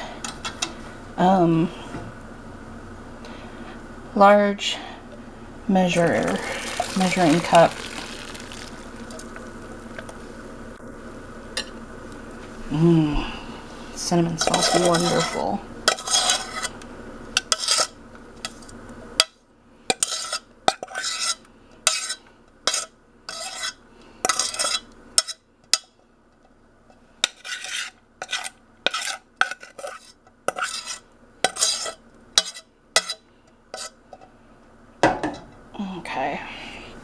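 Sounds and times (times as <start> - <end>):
metal spoon scraping a pot: 14.4 - 16.8, 17.4 - 18.6, 19.9 - 25.4, 27.2 - 33.2, 33.8 - 34.0.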